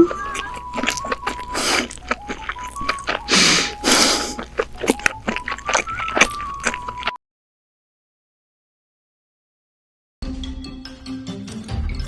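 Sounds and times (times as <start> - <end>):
loud slurp: 0.0 - 2.1, 2.8 - 4.5
chewing and lip smacks: 0.0 - 7.2
simple background melody: 0.0 - 7.2, 10.2 - 12.0.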